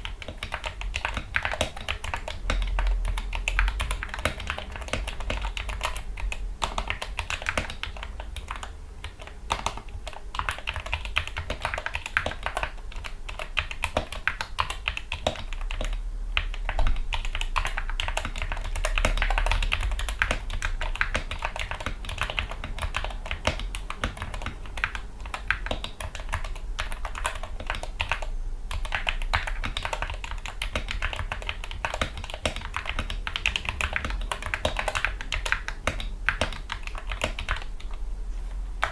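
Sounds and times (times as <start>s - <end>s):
fast typing key clacks: 0.0s - 38.0s.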